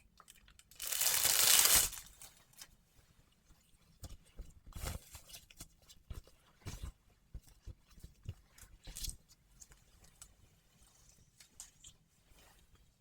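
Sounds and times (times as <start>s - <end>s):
strap tearing rasp: 0.8s - 2.1s.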